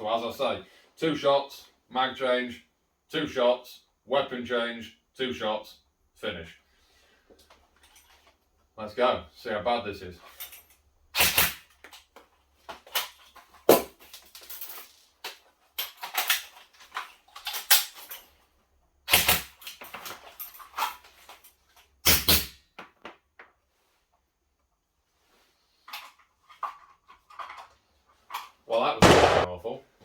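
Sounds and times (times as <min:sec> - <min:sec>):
magazine clicks and rattles: 0:12.8 - 0:18.2
airsoft guns firing: 0:29.0 - 0:29.6.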